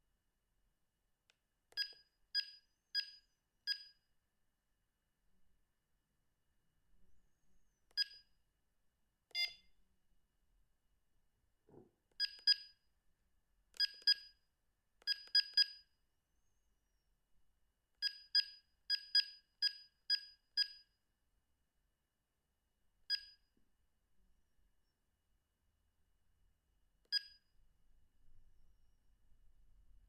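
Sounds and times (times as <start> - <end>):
phone keypress beeps: 1.7 - 4.0, 9.3 - 9.7, 12.2 - 12.8, 13.8 - 14.4, 15.0 - 15.8, 27.1 - 27.4.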